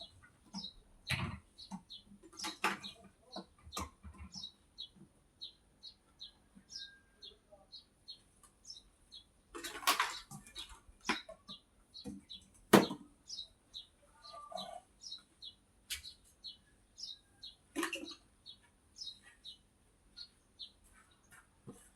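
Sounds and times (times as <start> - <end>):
small bird chirping: 0.0 - 12.6, 13.2 - 21.5
sharp knocks and clatters: 9.6 - 13.1.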